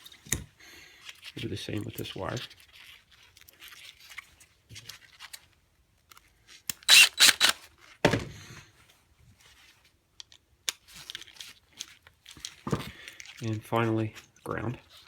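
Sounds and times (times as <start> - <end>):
scratchy tool scraping: 6.9 - 7.6.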